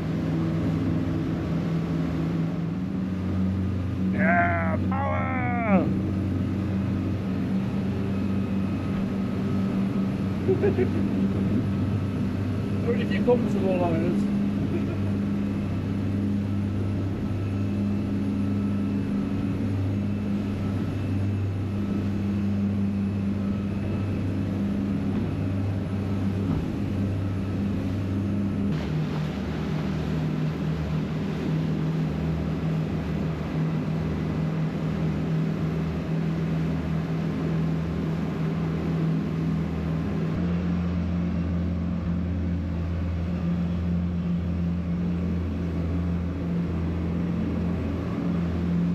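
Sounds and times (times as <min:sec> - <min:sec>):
outboard engine droning: 0:00.0 - 0:48.9
wind: 0:00.0 - 0:48.9
water rushing: 0:04.0 - 0:07.4.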